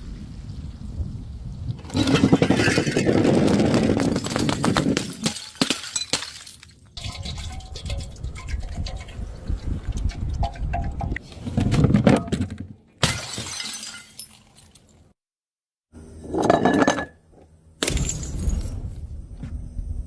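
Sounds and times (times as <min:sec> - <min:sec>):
glass bottles smashing: 0:02.0 - 0:09.1, 0:13.0 - 0:15.0, 0:16.4 - 0:17.2, 0:17.8 - 0:18.8
glass shards clinking: 0:04.3 - 0:09.3, 0:13.0 - 0:15.0, 0:16.3 - 0:17.2.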